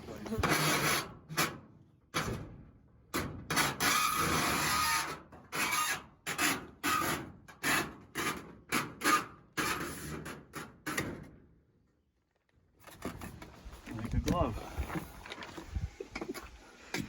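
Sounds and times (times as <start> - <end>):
pipe scraping against wood: 12.8 - 17.0.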